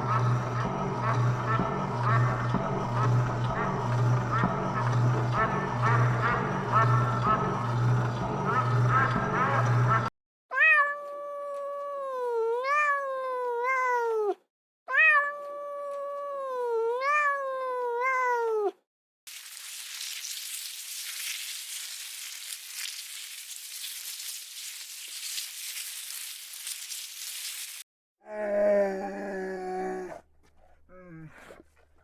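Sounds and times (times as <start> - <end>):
steady hiss: 19.3 - 27.8.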